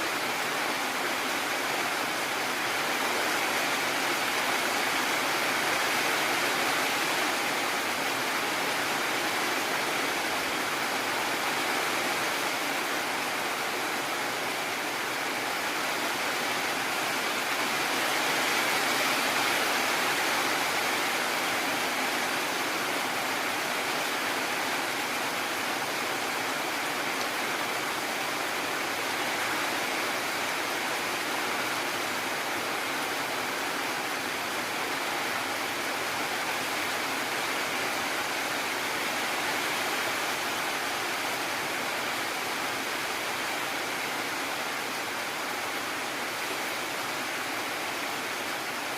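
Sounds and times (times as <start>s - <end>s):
heavy rain falling: 0.0s - 48.9s.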